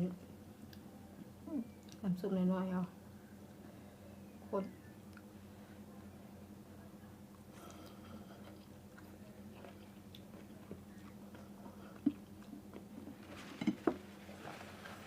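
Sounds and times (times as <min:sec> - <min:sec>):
faint low hum: 0:00.0 - 0:15.0
quiet chewing: 0:00.6 - 0:02.1, 0:07.3 - 0:15.0.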